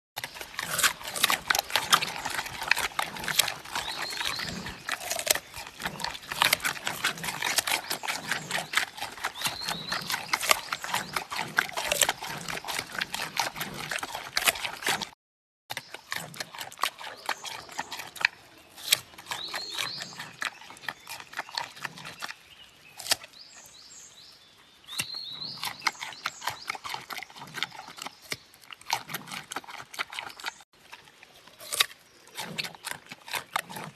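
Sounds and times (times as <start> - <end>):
panda crunching bamboo: 0.2 - 15.1, 15.7 - 22.1, 23.0 - 23.3, 24.9 - 33.9.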